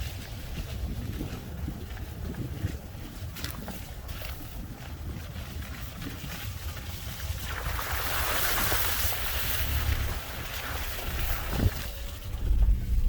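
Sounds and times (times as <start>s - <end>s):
wind buffeting microphone: 0.0s - 13.0s
vehicle rumbling on dirt track: 8.1s - 13.0s.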